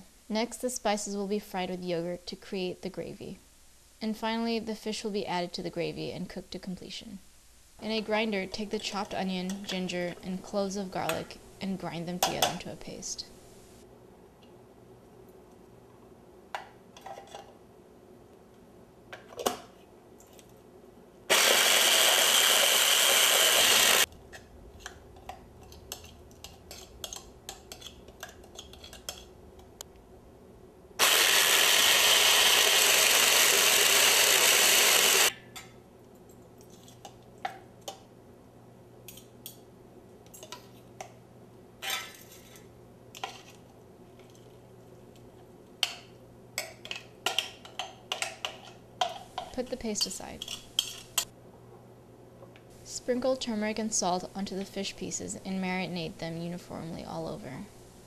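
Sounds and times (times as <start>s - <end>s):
electric grinder running: 21.3s - 24.1s, 31.0s - 35.3s.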